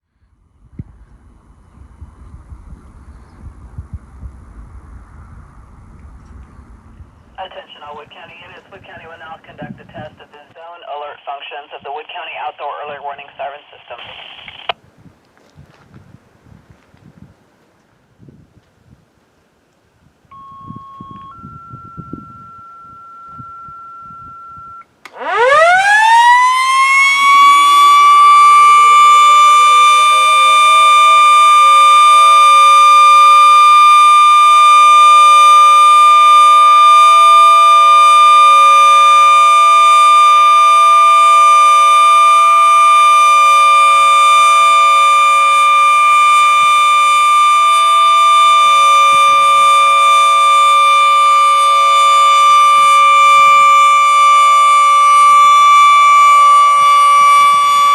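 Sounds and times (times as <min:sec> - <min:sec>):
steady beep: 0:20.3 - 0:24.8
tornado siren winding up: 0:20.3 - 0:57.9.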